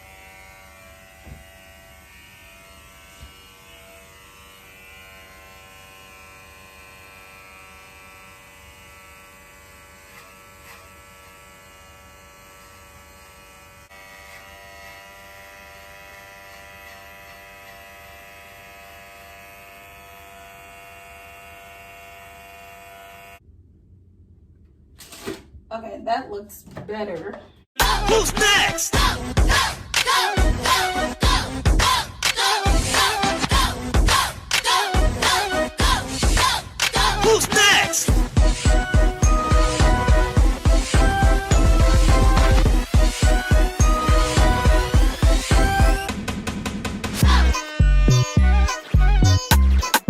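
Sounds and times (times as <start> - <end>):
electric hair clippers buzzing: 0.0 - 23.4, 37.0 - 46.2.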